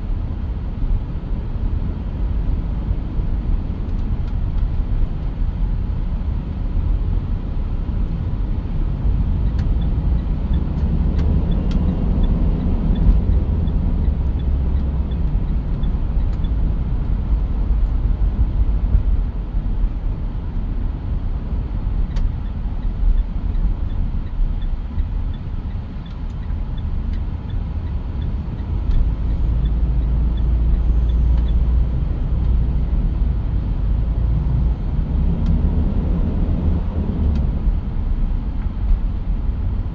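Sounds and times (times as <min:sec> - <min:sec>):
engine and road noise rumble: 0:00.0 - 0:39.9.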